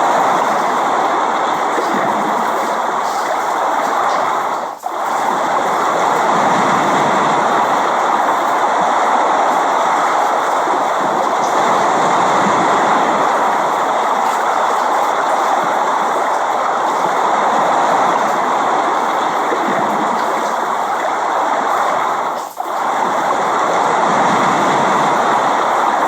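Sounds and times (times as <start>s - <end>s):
steady rain falling: 0.0s - 26.0s.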